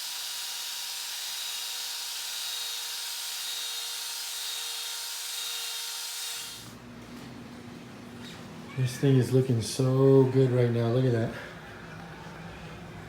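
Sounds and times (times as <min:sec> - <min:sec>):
drill with wire brush on metal: 0:00.0 - 0:06.8.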